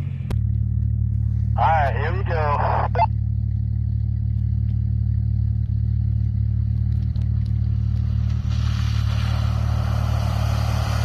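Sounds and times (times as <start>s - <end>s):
car engine droning: 0.0s - 11.0s.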